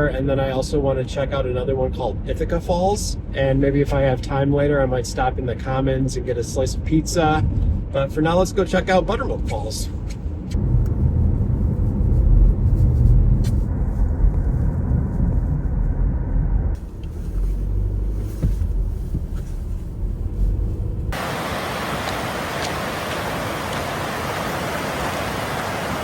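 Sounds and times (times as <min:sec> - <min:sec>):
tyre and engine rumble: 0:09.2 - 0:26.0
steady rushing noise: 0:18.4 - 0:26.0.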